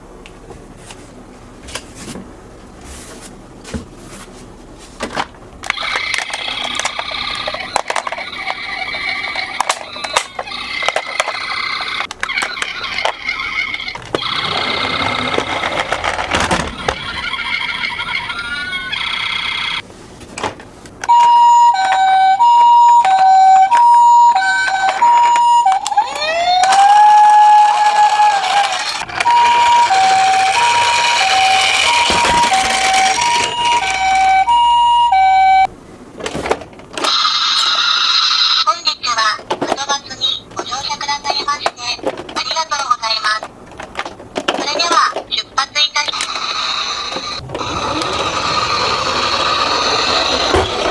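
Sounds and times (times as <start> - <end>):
toy cars clicking and rattling: 5.6 - 19.6, 24.6 - 34.5, 41.1 - 45.4, 46.0 - 50.9
toy hi-lo siren: 5.7 - 16.2, 21.1 - 35.7, 46.3 - 50.9
rising siren wail: 14.1 - 19.8, 21.2 - 35.7, 47.4 - 50.9.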